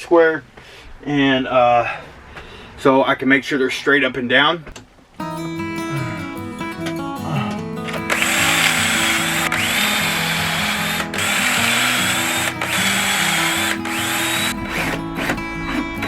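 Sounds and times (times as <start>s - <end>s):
background music: 5.2s - 16.0s
power drill whine: 8.0s - 15.8s.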